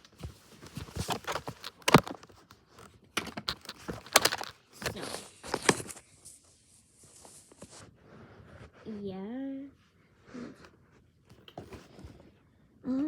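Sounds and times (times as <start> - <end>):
rustling: 0.0 - 9.1
toys clicking and knocking: 3.2 - 5.0.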